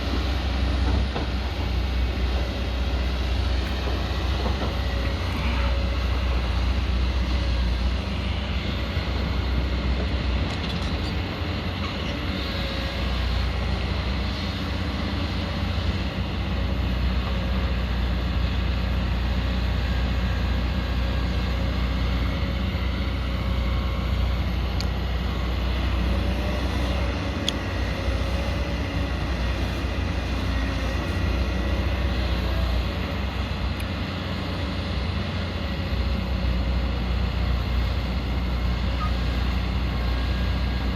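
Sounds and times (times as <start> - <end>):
excavator diesel engine rumbling: 0.0 - 40.9.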